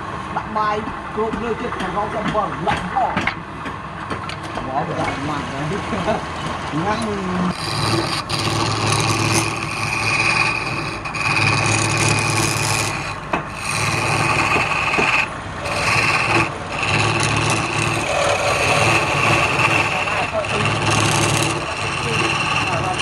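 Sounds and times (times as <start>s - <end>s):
turning tool scraping wood: 7.0s - 23.0s
wood lathe motor hum: 7.5s - 23.0s.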